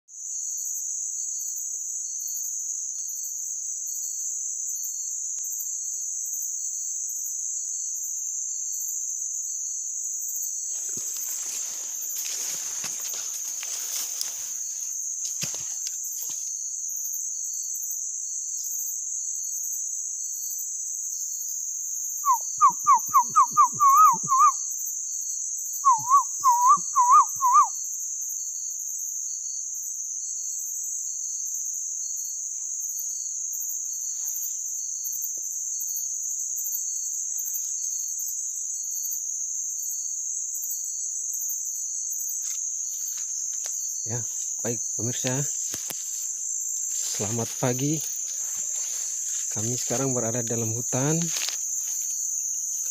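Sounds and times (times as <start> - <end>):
crickets chirping: 0.1 - 52.9
man whistling bird call: 22.2 - 24.7, 25.8 - 27.8.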